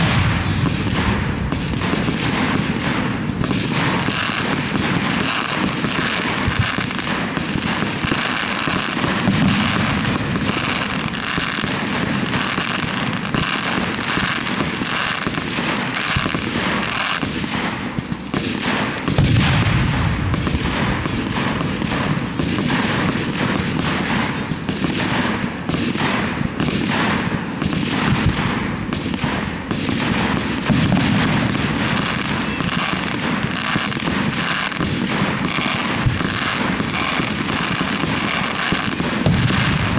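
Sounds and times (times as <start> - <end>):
firework boom: 0.0 - 2.2, 18.9 - 24.5
fireworks crackling and popping: 0.0 - 39.9.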